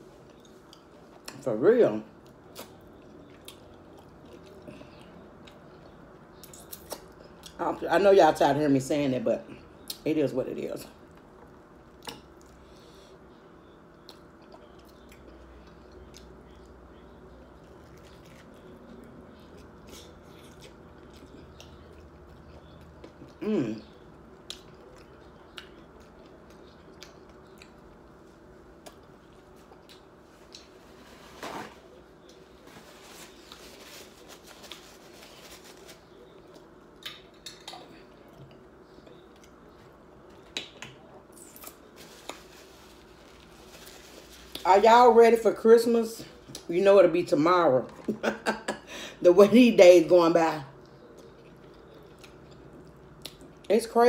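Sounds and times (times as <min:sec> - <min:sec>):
person chewing food: 0:02.2 - 0:07.6, 0:13.6 - 0:31.2, 0:50.8 - 0:53.7.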